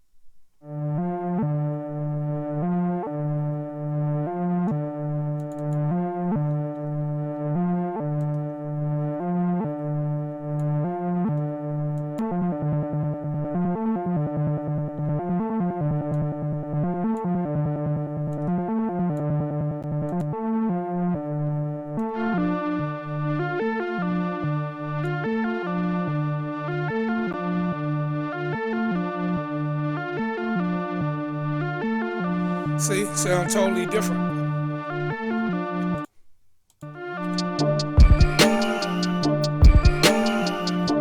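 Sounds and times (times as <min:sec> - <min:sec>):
synthesizer melody line: 0:37.2 - 0:41.0
synthesizer chords: 0:37.3 - 0:41.0.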